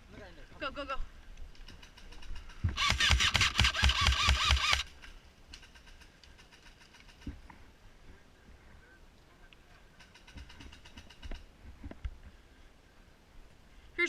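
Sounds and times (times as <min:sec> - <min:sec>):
airsoft gun firing full-auto: 0:02.8 - 0:04.9.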